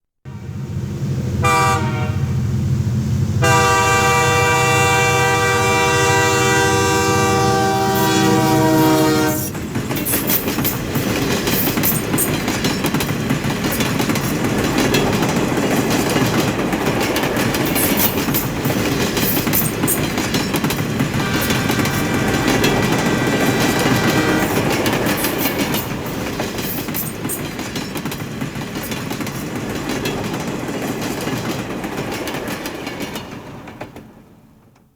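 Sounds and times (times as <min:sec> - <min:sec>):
train horn blowing: 0:00.3 - 0:00.8, 0:01.4 - 0:02.6, 0:03.4 - 0:09.6, 0:21.1 - 0:25.1
train rumbling past: 0:00.3 - 0:34.9
wheels clicking over rail joints: 0:07.6 - 0:34.9.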